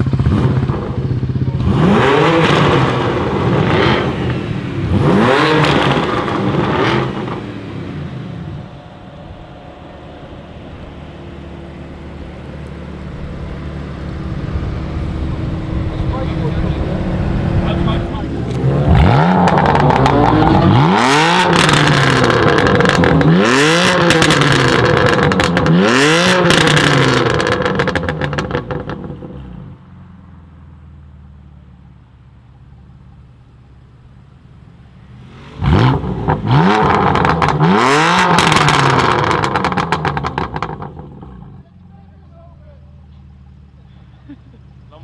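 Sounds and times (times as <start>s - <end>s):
car engine revving: 0.0s - 45.0s.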